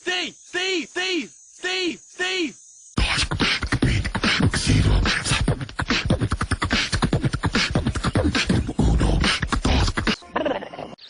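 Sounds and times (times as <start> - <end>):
person beatboxing: 3.0 - 10.2.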